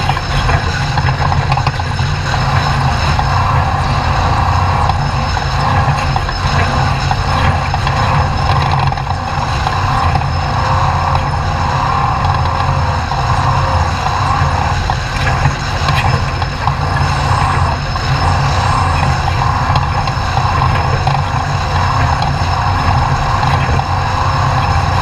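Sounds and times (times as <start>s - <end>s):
truck engine rumble: 0.0s - 25.0s
wind and terrain noise: 0.0s - 25.0s.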